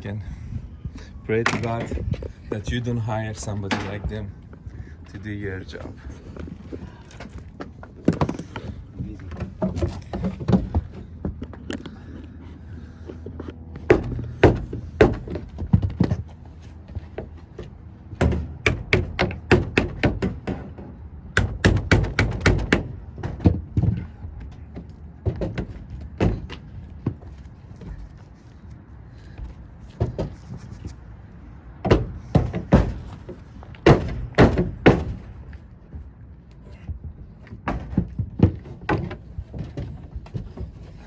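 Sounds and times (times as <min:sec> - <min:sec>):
knocks on sheet-metal ductwork: 0:13.9 - 0:16.2, 0:18.2 - 0:20.8, 0:21.4 - 0:24.0, 0:31.8 - 0:35.4.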